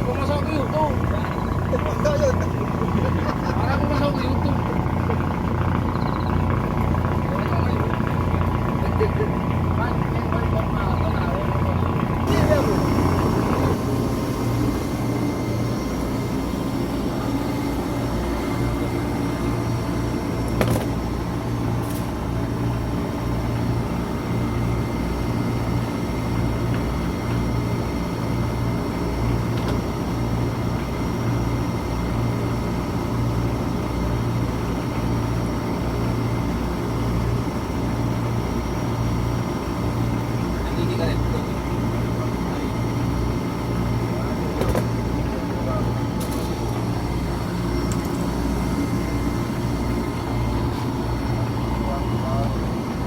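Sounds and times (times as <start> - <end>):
boat machinery humming: 0.0 - 53.0
thin high whine: 5.1 - 7.6, 12.2 - 23.6.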